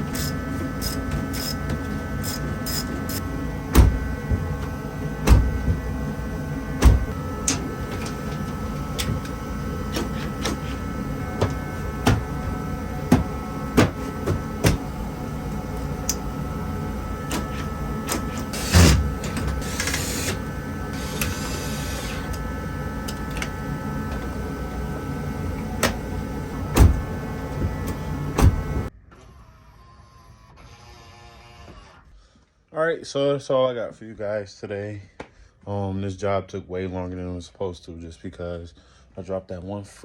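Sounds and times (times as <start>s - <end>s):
steady hum: 0.0s - 28.9s
heavy thumps: 3.6s - 15.0s.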